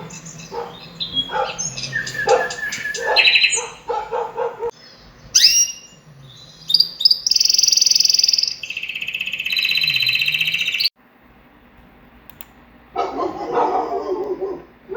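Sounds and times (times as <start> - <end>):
birds chirping: 0.0 - 10.9, 13.0 - 14.9
high bird trills: 0.0 - 10.9.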